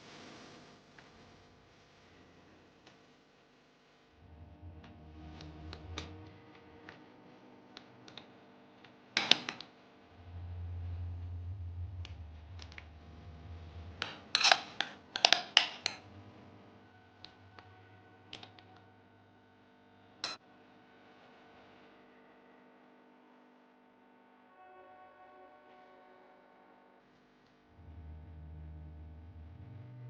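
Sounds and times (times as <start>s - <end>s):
low hum: 4.2s - 7.0s, 10.1s - 14.6s, 27.8s - 30.0s.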